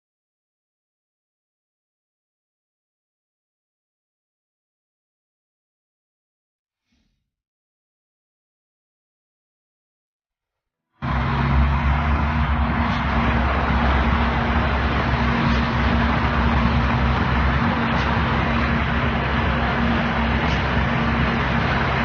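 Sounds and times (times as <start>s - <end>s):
broad rushing noise: 11.0s - 22.0s
engine droning: 11.0s - 22.0s.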